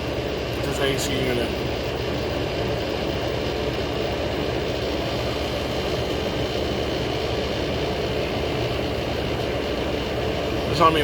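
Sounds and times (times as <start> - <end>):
air conditioner compressor humming: 0.0 - 11.0
air conditioner fan rushing: 0.0 - 11.0.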